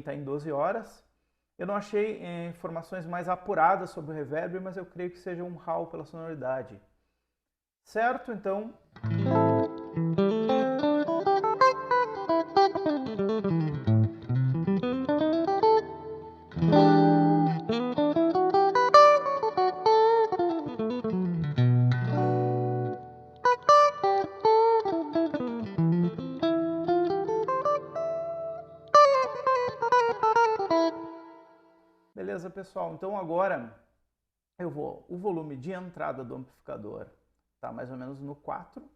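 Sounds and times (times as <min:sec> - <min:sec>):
clean electric guitar arpeggios: 0:09.0 - 0:31.5.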